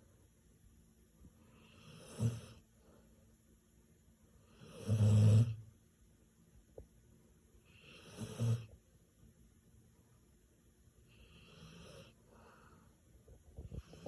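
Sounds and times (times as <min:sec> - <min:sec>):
dog snoring: 0:01.4 - 0:02.6, 0:04.4 - 0:05.6, 0:07.6 - 0:08.7, 0:11.1 - 0:12.2, 0:13.7 - 0:14.0.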